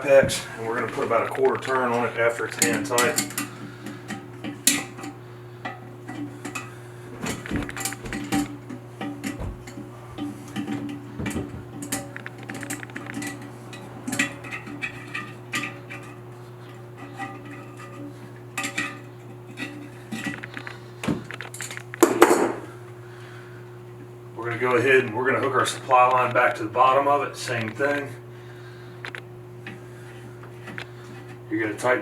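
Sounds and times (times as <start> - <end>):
pliers clinking on porcelain tank: 1.5 - 3.5, 7.8 - 16.2.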